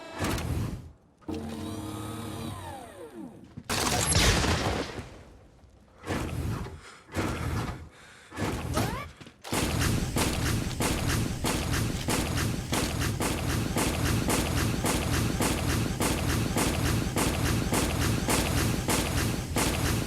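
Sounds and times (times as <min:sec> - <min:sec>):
fast repeated clanks: 0:08.4 - 0:20.0
loud hissing blast: 0:09.6 - 0:20.0
rising whirring bursts: 0:09.6 - 0:20.0.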